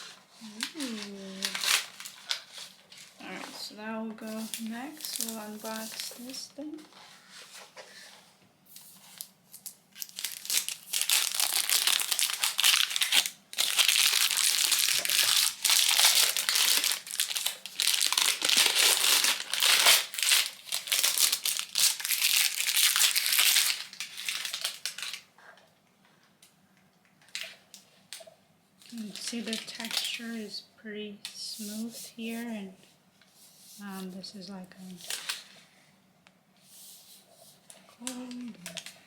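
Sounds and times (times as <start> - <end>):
packaging crinkling and rustling: 0.0 - 8.0, 8.7 - 25.3, 27.2 - 30.5, 34.8 - 35.6, 37.1 - 39.0.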